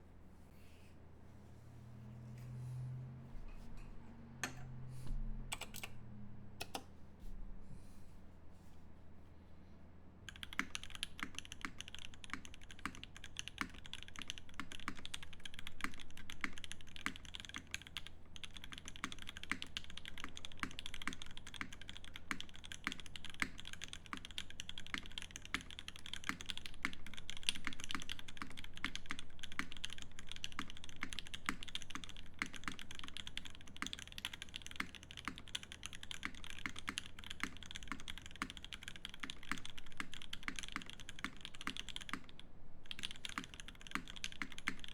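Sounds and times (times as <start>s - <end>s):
fast mechanical keyboard typing: 5.5s - 5.9s, 10.3s - 44.9s.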